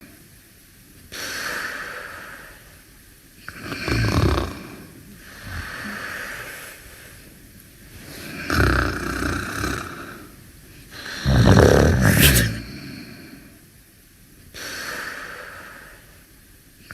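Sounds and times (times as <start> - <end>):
airy breath: 5.2 - 7.3, 10.9 - 13.6
person snoring: 11.0 - 13.0.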